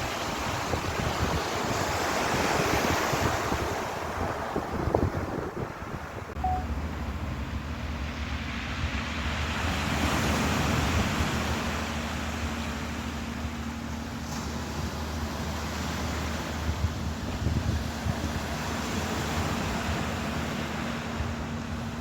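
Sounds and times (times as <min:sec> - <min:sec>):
wind noise on microphone: 0:00.0 - 0:12.6, 0:14.8 - 0:22.0
ocean waves washing: 0:00.0 - 0:22.0.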